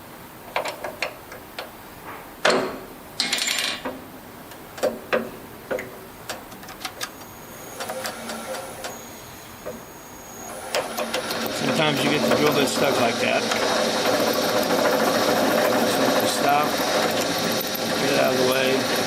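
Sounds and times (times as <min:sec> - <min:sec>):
drill bit squealing: 0:07.2 - 0:19.0.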